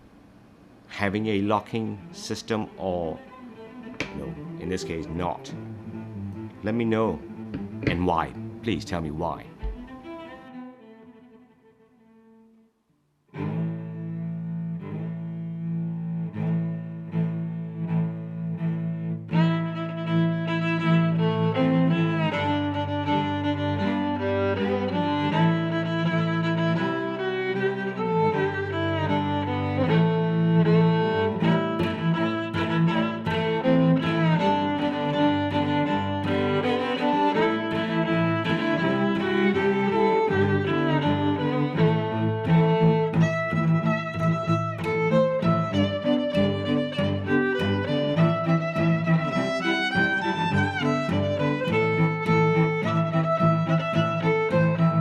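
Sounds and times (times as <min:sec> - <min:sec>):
background music with steady beat: 0:02.1 - 0:10.6.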